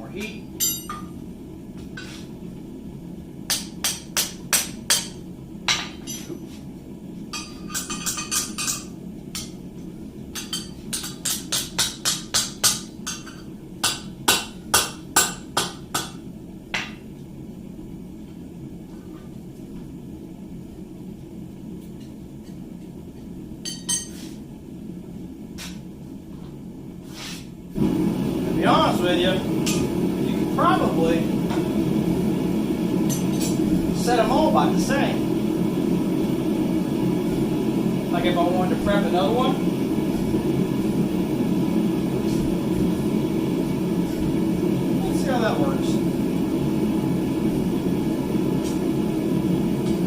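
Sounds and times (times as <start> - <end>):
steady low hum: 0.0 - 50.0
hammer striking steel on anvil: 0.2 - 1.2, 3.5 - 6.4, 10.3 - 16.2, 23.6 - 24.1.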